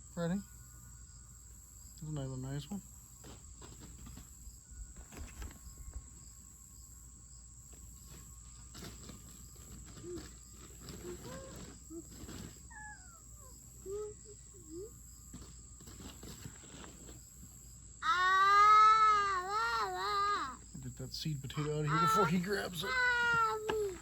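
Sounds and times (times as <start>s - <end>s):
high insect drone: 0.0s - 24.0s
toddler babbling: 11.0s - 15.0s, 18.0s - 20.6s, 21.8s - 24.0s.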